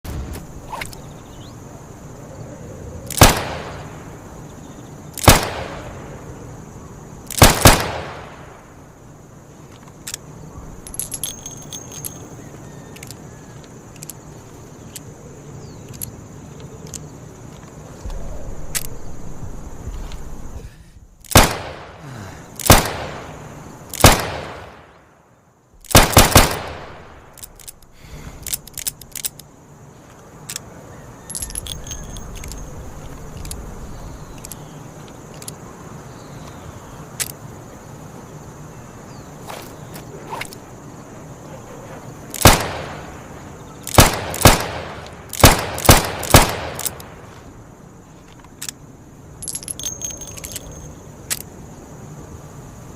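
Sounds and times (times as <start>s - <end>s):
metallic clicks of gun handling: 9.7s - 12.3s, 12.9s - 14.2s, 14.8s - 15.1s, 15.8s - 19.0s, 27.2s - 29.5s, 30.1s - 33.7s, 34.3s - 35.6s, 37.2s - 37.4s, 43.8s - 47.2s, 48.2s - 48.8s, 49.4s - 51.5s.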